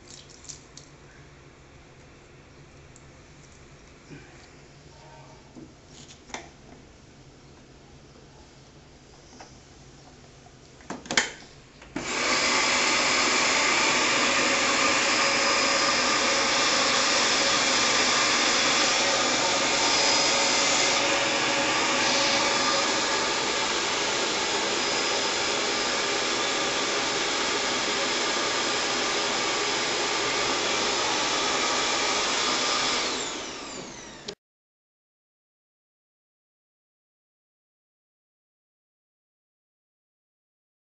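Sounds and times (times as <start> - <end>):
vacuum cleaner whining: 11.9 - 34.4.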